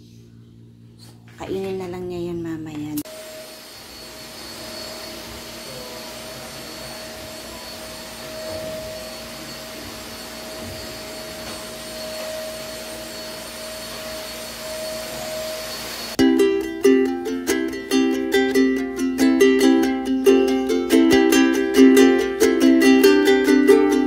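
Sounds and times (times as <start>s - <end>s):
faint hum: 0.0s - 24.0s
electric motor whirring: 3.1s - 16.2s
plucked ukulele music: 16.2s - 24.0s.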